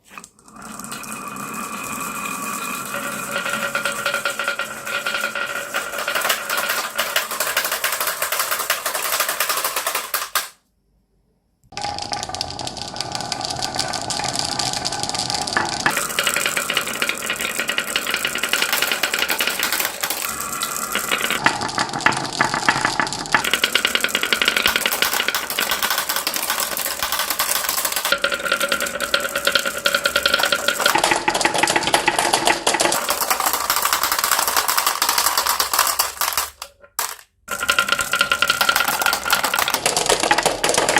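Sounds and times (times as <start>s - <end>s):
marbles rattling down a track: 0.5s - 10.6s, 11.7s - 40.9s.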